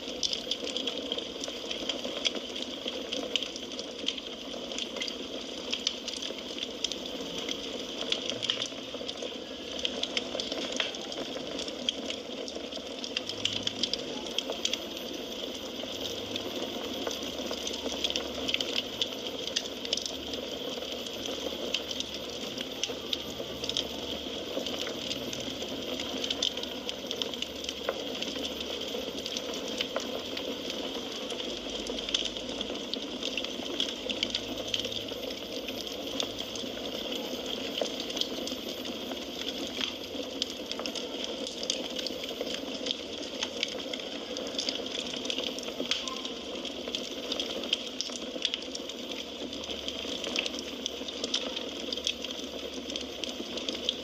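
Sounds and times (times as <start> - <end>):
fire crackling and popping: 0.0 - 54.0.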